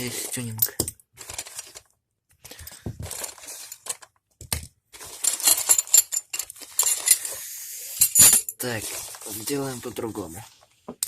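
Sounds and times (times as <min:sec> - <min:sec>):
small metal parts clinking: 0:00.3 - 0:04.1, 0:05.0 - 0:07.4, 0:08.0 - 0:08.7.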